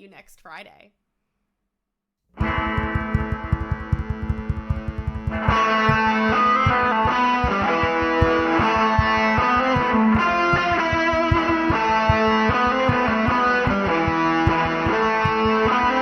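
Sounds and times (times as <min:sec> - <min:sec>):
distorted electric guitar: 0:02.4 - 0:16.0
fast steady beat: 0:02.4 - 0:16.0.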